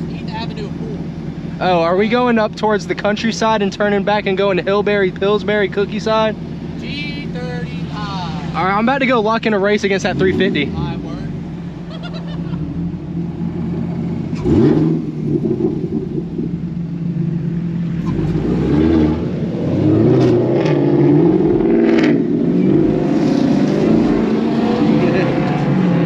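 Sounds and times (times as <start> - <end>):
car engine accelerating hard: 8.2 - 26.0.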